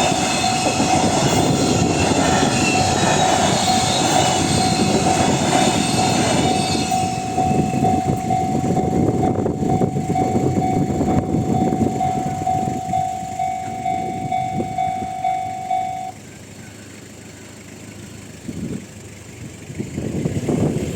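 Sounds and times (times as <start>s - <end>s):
electronic crossing alarm pulsing: 0.0s - 16.2s
freight train rumbling past: 0.0s - 20.9s.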